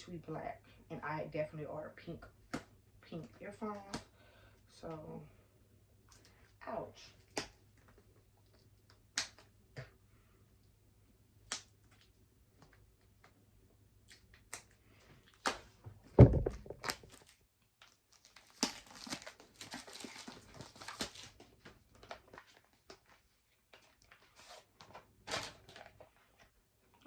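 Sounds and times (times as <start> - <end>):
heavy thump: 16.2 - 16.8
packaging crinkling and tearing: 16.8 - 26.2.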